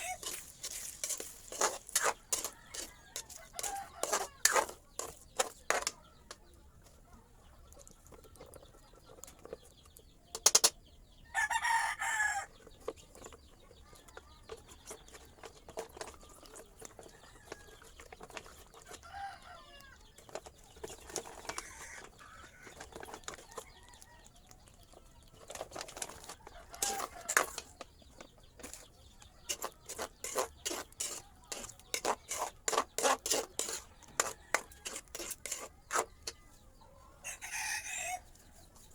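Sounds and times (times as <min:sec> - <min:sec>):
rooster crowing: 0:11.3 - 0:12.5, 0:37.2 - 0:38.3.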